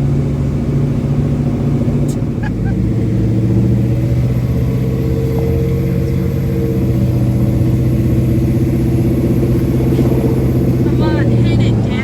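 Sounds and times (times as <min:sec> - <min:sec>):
vehicle engine running: 0:00.0 - 0:12.0.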